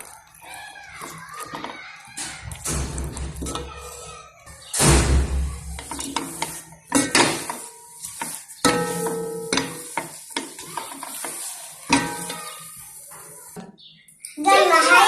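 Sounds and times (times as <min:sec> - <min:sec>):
spoon scraping and clinking in bowl: 0:05.8 - 0:13.0.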